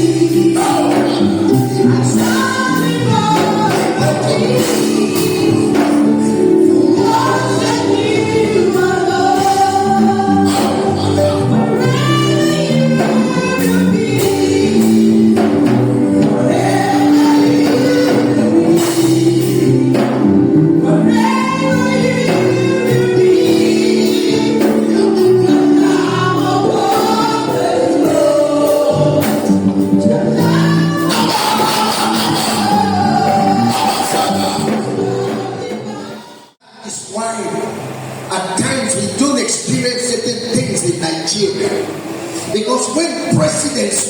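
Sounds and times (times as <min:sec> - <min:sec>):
choir singing: 0:00.0 - 0:39.5
keyboard chords: 0:00.0 - 0:44.0.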